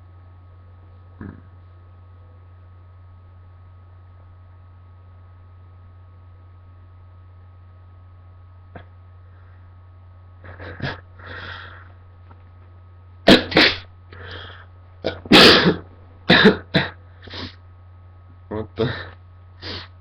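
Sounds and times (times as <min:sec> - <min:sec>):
person sneezing: 0:10.5 - 0:11.8, 0:13.3 - 0:14.5, 0:15.1 - 0:17.6, 0:18.8 - 0:19.9
breathy inhaling: 0:11.2 - 0:12.0, 0:14.1 - 0:14.7
short coughs: 0:13.3 - 0:13.9, 0:15.1 - 0:17.0.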